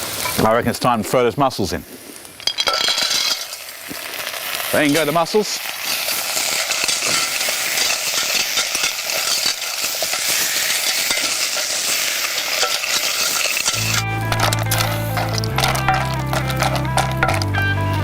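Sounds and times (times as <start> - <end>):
mussels sizzling in hot oil: 0.0 - 18.0
background music: 13.7 - 18.0.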